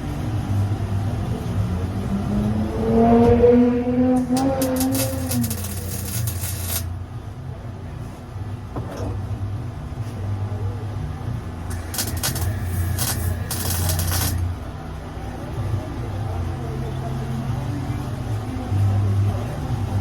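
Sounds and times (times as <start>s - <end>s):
engine running low: 0.0s - 20.0s
bursts of hiss: 11.7s - 14.5s.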